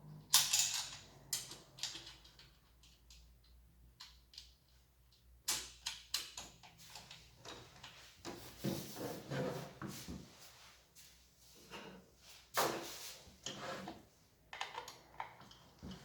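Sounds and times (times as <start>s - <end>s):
clicks and knocks of parts: 0.2s - 8.0s, 14.5s - 16.0s.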